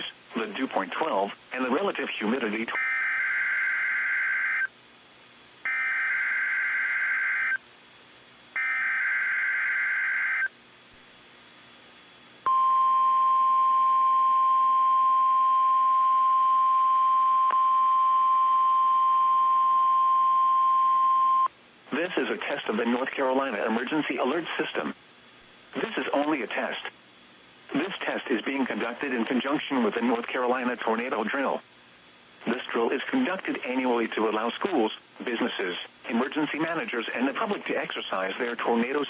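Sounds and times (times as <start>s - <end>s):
steady warning alarm tone: 2.8s - 4.7s, 5.7s - 7.6s, 8.6s - 10.5s
screechy digital data bursts: 5.7s - 7.6s, 8.6s - 10.5s.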